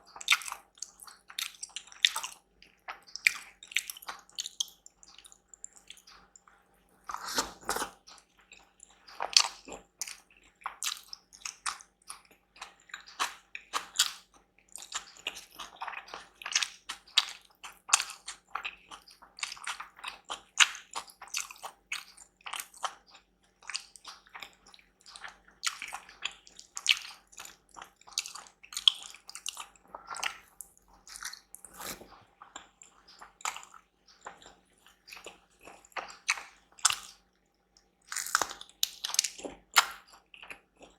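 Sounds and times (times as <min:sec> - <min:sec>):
wet chewing and mouth clicks: 0:00.0 - 0:40.9.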